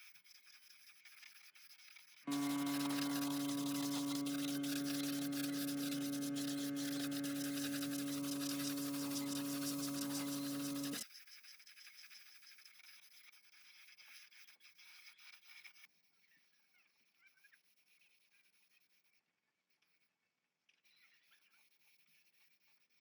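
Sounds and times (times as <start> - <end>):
faint rubbing: 2.3 - 11.0
steady hum: 2.3 - 11.0.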